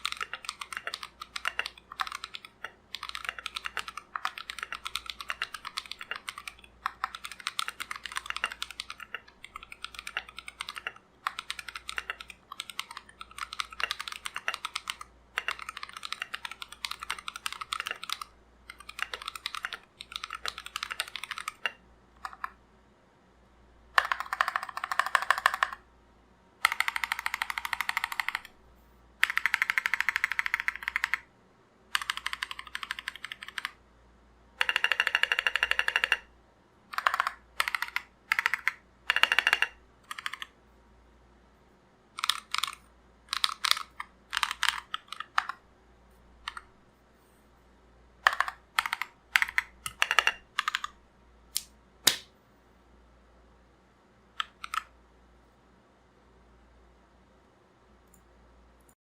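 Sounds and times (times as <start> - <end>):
mechanical keyboard typing: 0.0 - 22.6, 23.9 - 25.9, 26.6 - 28.6, 29.2 - 31.3, 31.9 - 33.8, 34.6 - 36.3, 36.9 - 40.6, 42.1 - 45.6, 46.4 - 46.7, 48.2 - 51.0, 54.4 - 55.0.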